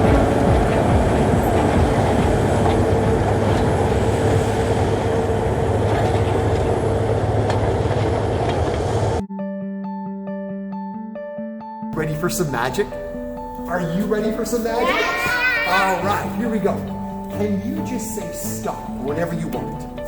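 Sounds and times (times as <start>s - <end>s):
tractor rumbling and clattering: 0.0s - 9.2s
light chiming music: 11.8s - 20.0s.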